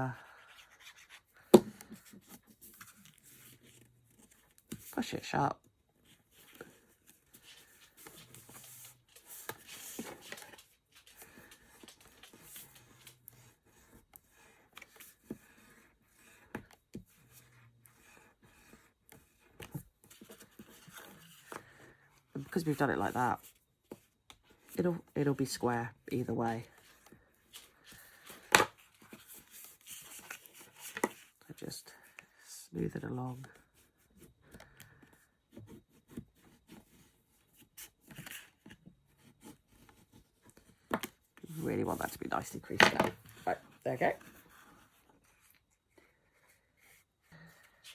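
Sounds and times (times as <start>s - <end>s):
card stock rustling: 6.0s - 16.4s.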